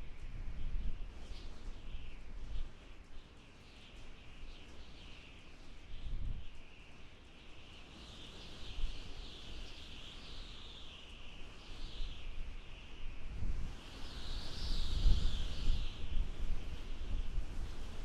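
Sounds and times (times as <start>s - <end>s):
wind gusts on microphone: 0.0s - 3.0s, 8.2s - 18.0s.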